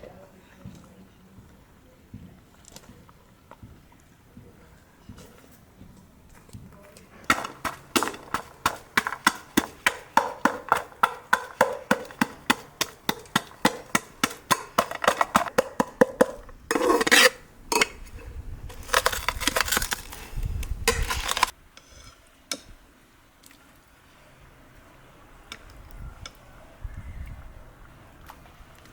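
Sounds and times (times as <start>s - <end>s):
scraping and rustling: 6.4s - 22.2s
kitchen utensils knocking: 7.3s - 18.0s.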